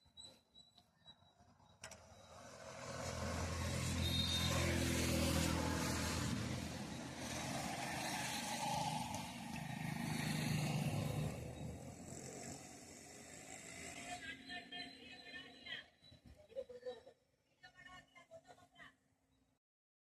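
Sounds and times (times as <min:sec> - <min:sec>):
vehicles passing on road: 0:01.4 - 0:15.7.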